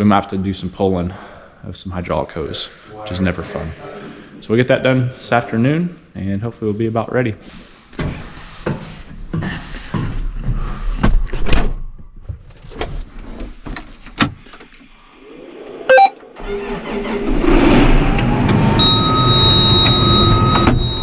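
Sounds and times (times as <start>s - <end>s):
engine starting and running: 14.9s - 21.0s
short loud beep: 15.9s - 16.2s, 18.7s - 21.0s.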